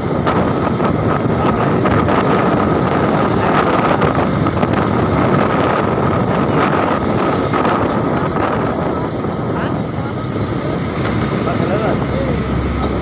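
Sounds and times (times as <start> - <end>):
steady high whine: 0.0 - 13.0
truck engine and road noise: 0.0 - 13.0
wind buffeting microphone: 0.0 - 13.0.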